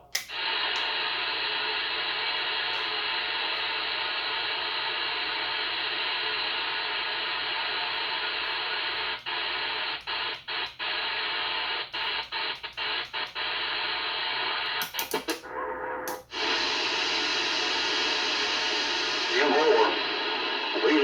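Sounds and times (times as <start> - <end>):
clicks: 0.1 - 0.9, 11.9 - 13.5, 14.6 - 16.3
radio static hiss: 0.3 - 21.0.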